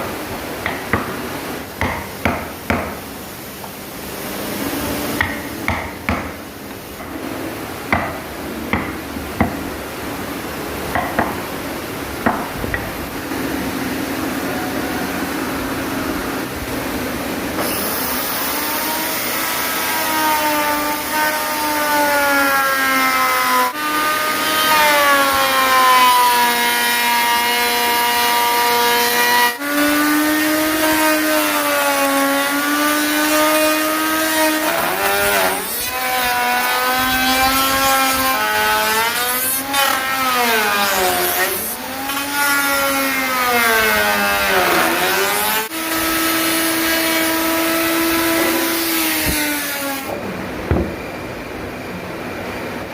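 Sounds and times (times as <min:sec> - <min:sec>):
power tool whining cutting wood: 0:17.6 - 0:50.2.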